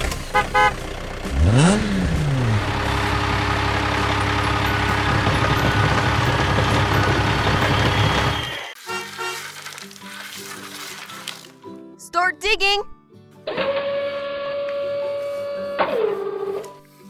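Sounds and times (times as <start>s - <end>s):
cartoon engine starting and revving: 0.0s - 8.7s
cartoon honk: 0.3s - 0.8s, 8.8s - 9.5s.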